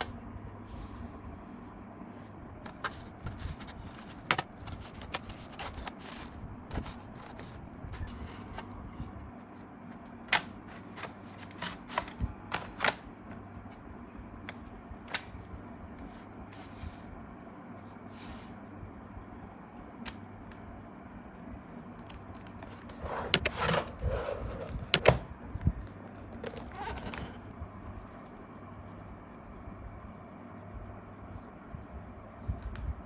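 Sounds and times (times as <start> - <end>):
steady low hum: 0.0 - 33.0
plastic and metal parts clicking: 2.7 - 8.6, 10.3 - 13.0.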